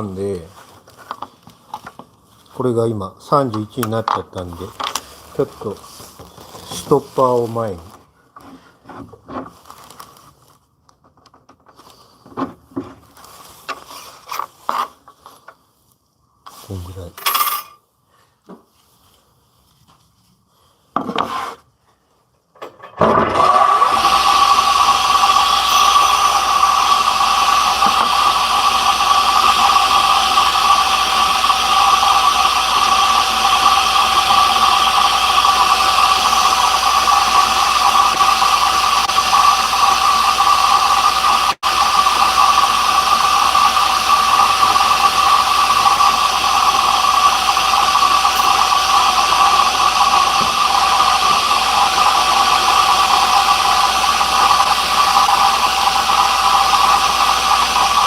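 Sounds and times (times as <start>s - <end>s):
table saw whine: 23.0s - 58.0s.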